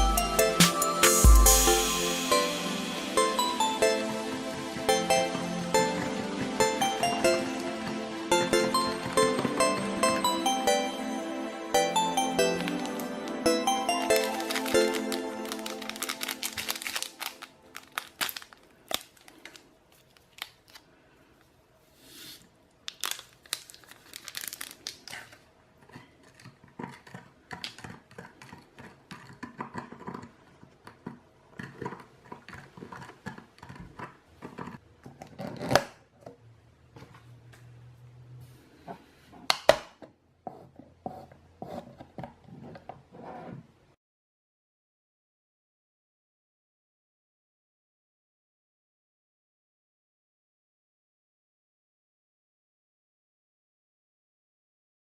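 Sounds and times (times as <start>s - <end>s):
plastic wrappers crinkling: 12.4s - 21.5s, 22.8s - 25.5s.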